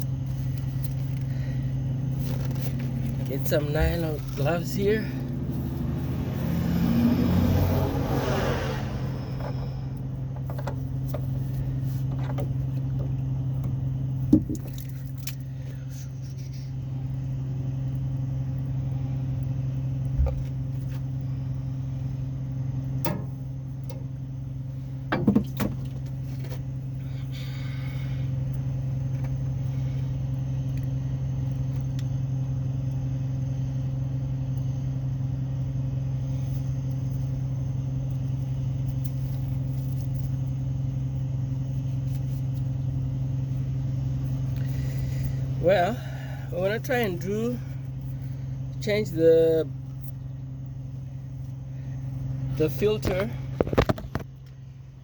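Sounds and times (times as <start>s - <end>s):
rustle: 0.0s - 3.3s
low engine hum: 0.0s - 55.0s.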